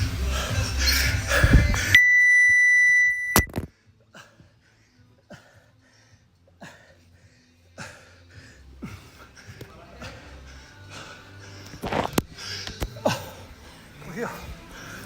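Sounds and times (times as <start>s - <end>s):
music: 0.0s - 2.0s, 3.5s - 15.0s
electronic timer long beep: 1.9s - 3.5s.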